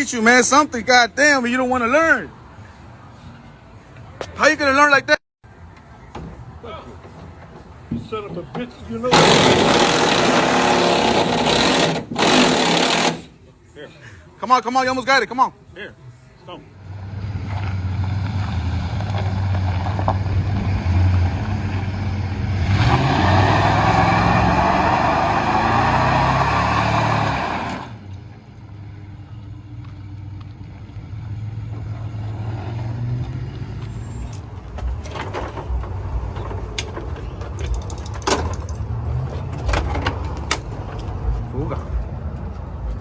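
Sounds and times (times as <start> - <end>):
vehicle engine revving: 9.2 - 13.3, 16.8 - 28.9, 30.9 - 34.4.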